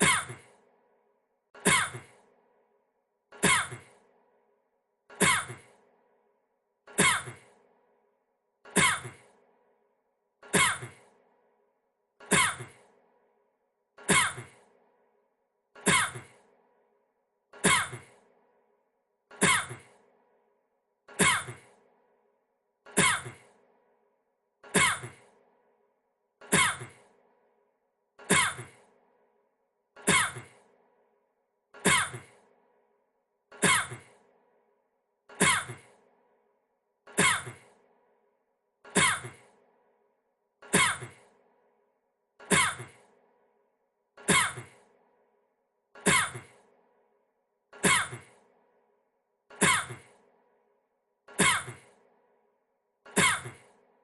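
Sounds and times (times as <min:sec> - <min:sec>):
man coughing: 0:38.9 - 0:39.4.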